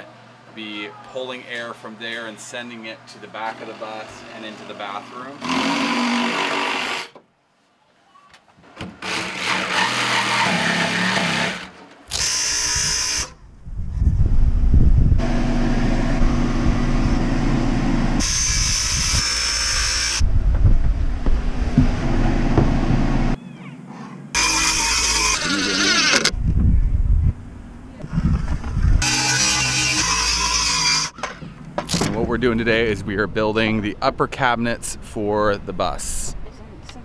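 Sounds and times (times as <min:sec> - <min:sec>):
power tools running: 0:03.4 - 0:07.2, 0:08.9 - 0:13.4, 0:15.2 - 0:20.2, 0:21.2 - 0:23.4, 0:24.4 - 0:26.4, 0:28.5 - 0:31.2
high whine: 0:12.6 - 0:23.4.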